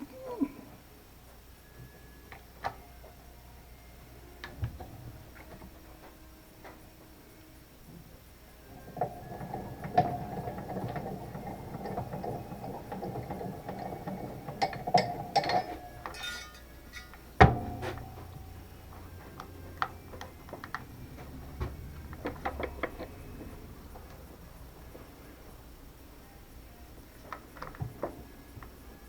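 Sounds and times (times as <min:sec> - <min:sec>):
rattling and scraping: 0:08.8 - 0:24.4.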